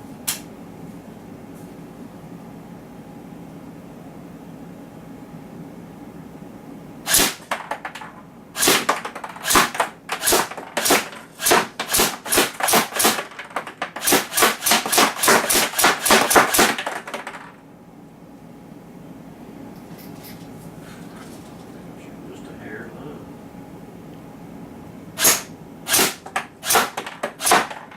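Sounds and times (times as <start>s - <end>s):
airsoft rifle shots: 7.1s - 7.9s, 8.6s - 13.3s, 14.0s - 17.3s, 25.2s - 27.9s.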